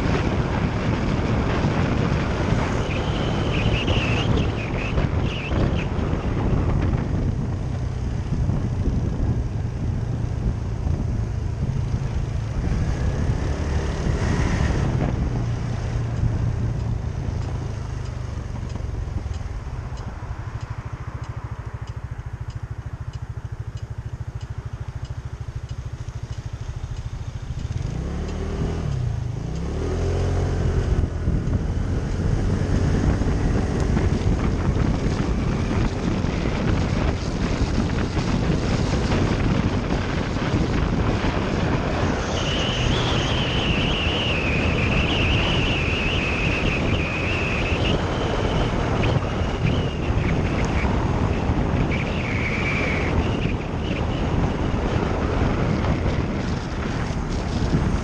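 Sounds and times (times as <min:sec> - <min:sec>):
wind rush: 0:00.0 - 0:25.6, 0:26.5 - 0:58.0
motorcycle engine running: 0:00.0 - 0:58.0.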